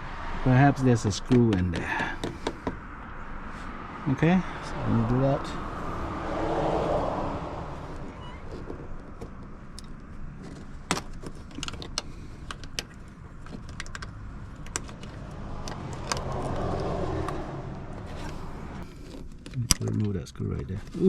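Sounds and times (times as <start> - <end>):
steady low rumble: 0.0 - 8.2.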